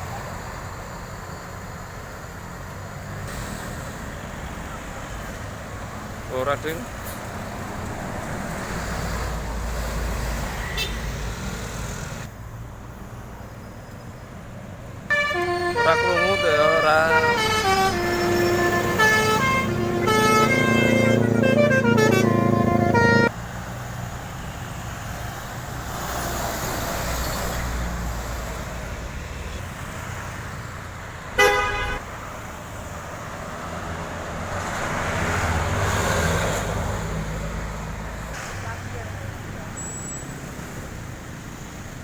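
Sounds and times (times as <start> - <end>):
passing traffic: 0.0 - 42.0
vehicle passing: 2.4 - 12.3, 16.2 - 39.7
bus horn playing a melody: 10.7 - 11.0, 15.1 - 23.3, 31.4 - 32.1
short horn blast: 15.1 - 23.3, 31.4 - 32.0.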